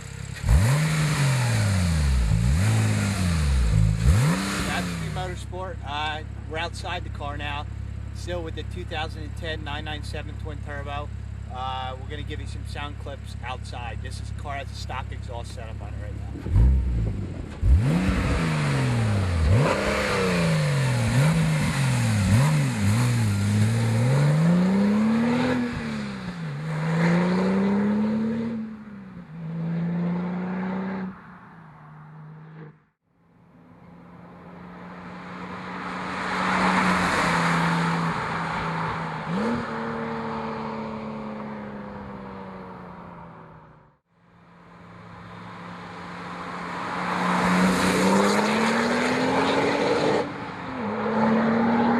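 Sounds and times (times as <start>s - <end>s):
car exhaust revving: 0.0s - 31.1s, 34.4s - 43.2s, 44.8s - 51.9s
car passing by: 35.0s - 41.5s, 45.4s - 51.9s.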